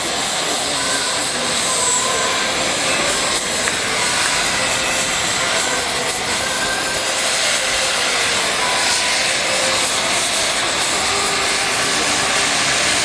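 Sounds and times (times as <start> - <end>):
cutting torch hissing: 0.0 - 13.0
faint steady tones: 0.0 - 13.0.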